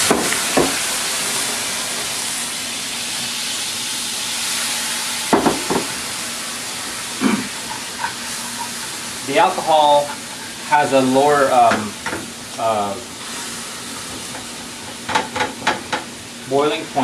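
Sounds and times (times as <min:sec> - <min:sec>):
wine sizzling in hot pan: 0:00.0 - 0:17.0
knocks against pan: 0:05.3 - 0:05.9.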